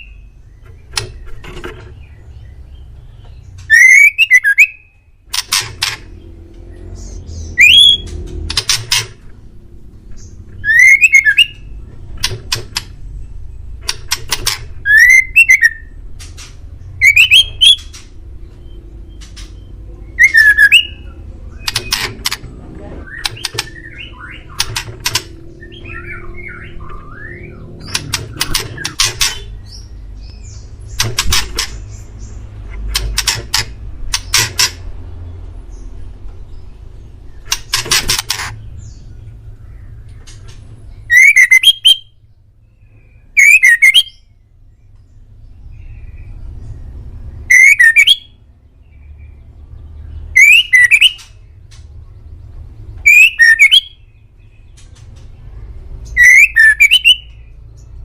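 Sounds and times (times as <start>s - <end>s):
songbird singing: 0.0s - 58.0s.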